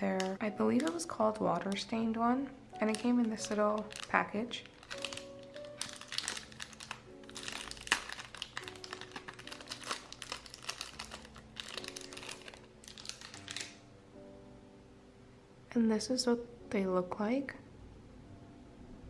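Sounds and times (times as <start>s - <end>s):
packaging crinkling: 0.0s - 1.9s, 2.8s - 13.8s
soft solo piano music: 0.0s - 14.7s.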